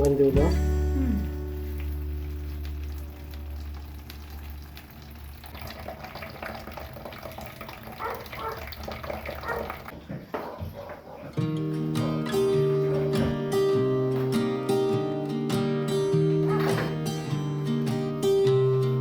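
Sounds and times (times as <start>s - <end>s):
low hum: 0.4s - 5.5s
food sizzling in a pan: 0.6s - 5.4s.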